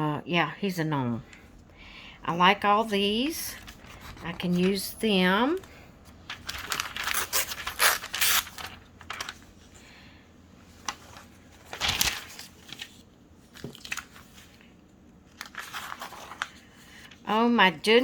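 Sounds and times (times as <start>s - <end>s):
paper pages rustling: 3.5s - 9.8s, 10.7s - 17.2s.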